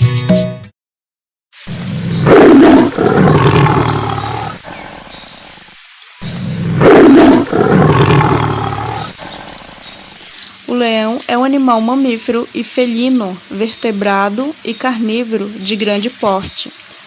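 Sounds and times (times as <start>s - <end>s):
lion roaring: 1.7s - 5.5s, 6.2s - 10.2s.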